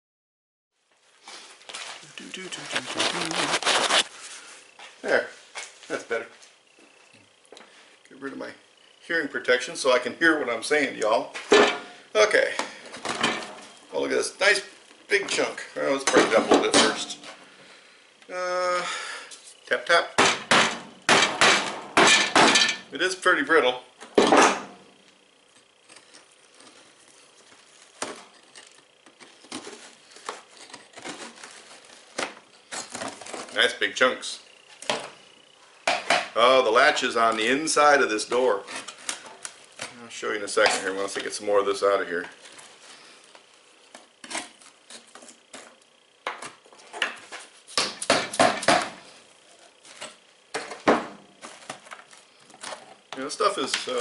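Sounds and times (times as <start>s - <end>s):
brittle filling crumbling: 1.6s - 4.1s
sharp knocks: 20.2s - 22.8s.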